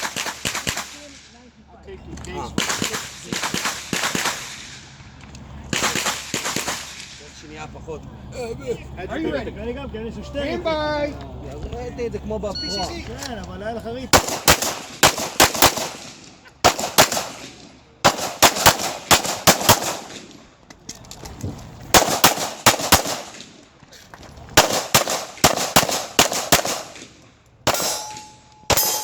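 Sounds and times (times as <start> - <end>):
pistol shots: 0.0 - 1.3, 2.5 - 5.0, 5.7 - 7.2, 14.1 - 20.5, 21.9 - 23.6, 24.6 - 29.0.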